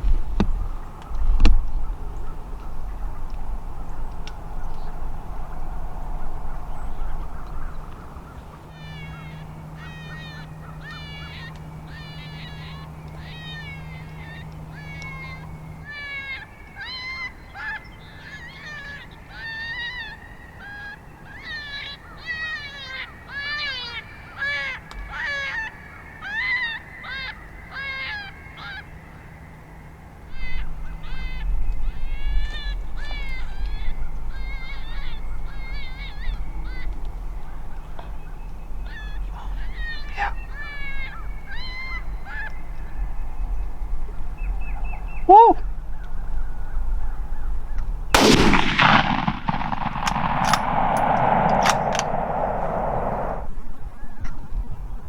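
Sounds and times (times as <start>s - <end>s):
coyotes yipping and howling: 0.0s - 54.7s
low rumble: 48.1s - 53.8s.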